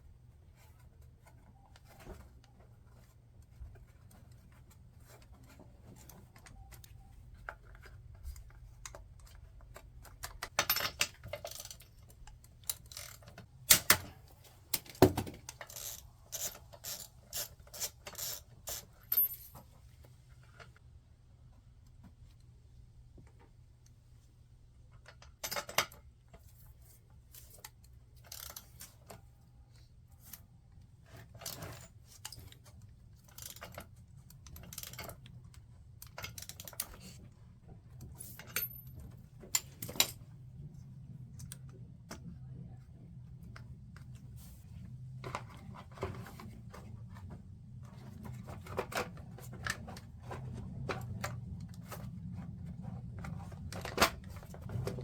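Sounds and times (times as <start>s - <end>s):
low steady hum: 0.0s - 55.0s
clatter of small parts handled: 3.8s - 14.1s, 14.7s - 19.8s, 31.1s - 35.4s.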